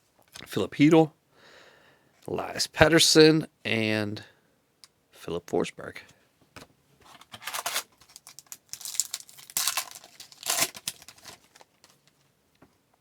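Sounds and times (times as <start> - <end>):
foil wrapper tearing and crinkling: 7.1 - 12.0.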